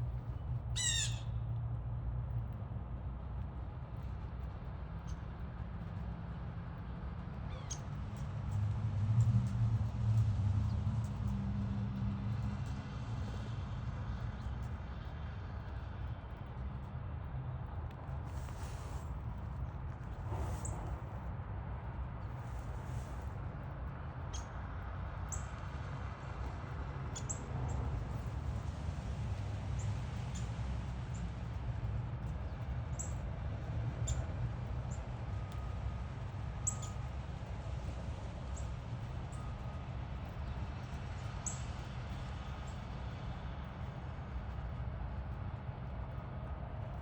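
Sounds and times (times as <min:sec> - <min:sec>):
low rumble: 0:18.2 - 0:23.4.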